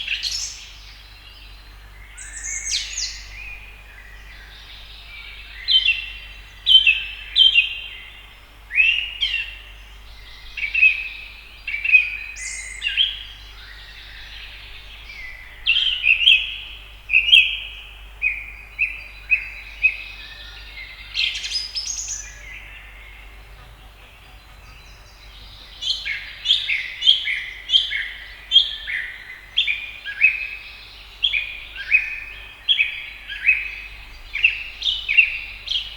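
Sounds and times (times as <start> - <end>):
sparrows chirping: 0.0 - 35.9.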